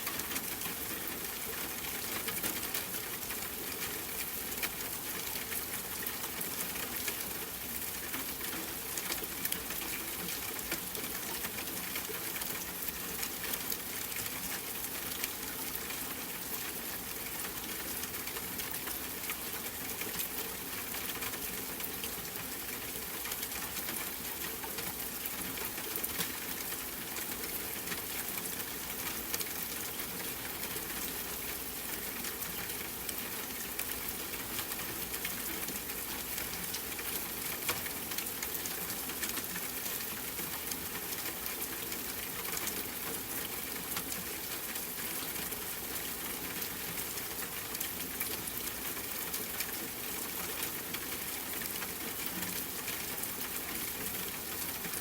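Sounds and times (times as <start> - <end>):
steady rain hiss: 0.0 - 55.0
raindrop ticks: 21.1 - 46.0.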